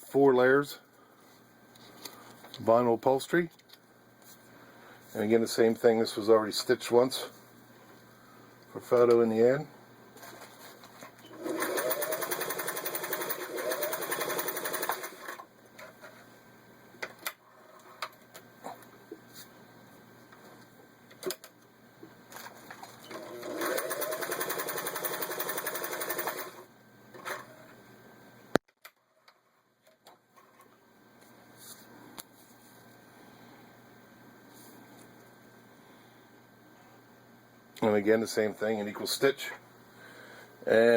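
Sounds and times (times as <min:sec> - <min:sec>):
sewing machine stitching: 0:11.3 - 0:15.4, 0:23.1 - 0:26.6.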